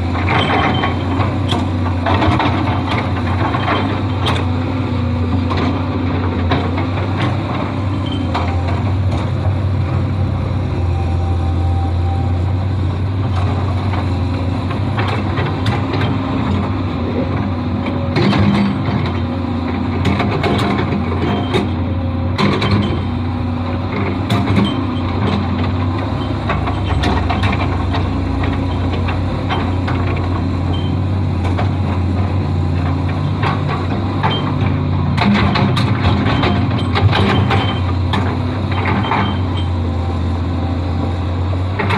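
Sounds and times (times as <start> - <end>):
excavator diesel engine: 0.0 - 41.9
metallic clanks and knocks: 0.1 - 4.6, 13.3 - 19.3, 24.3 - 32.1, 32.8 - 39.8.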